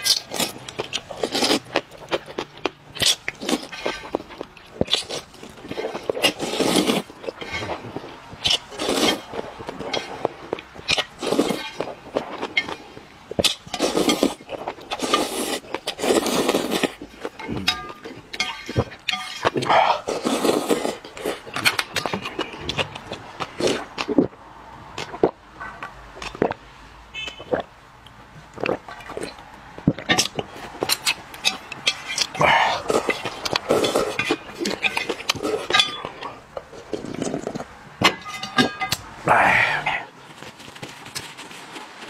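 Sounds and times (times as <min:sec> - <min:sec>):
chewing and crunching: 0:00.0 - 0:42.0
dishes and utensils clinking: 0:17.2 - 0:20.2, 0:30.0 - 0:39.0.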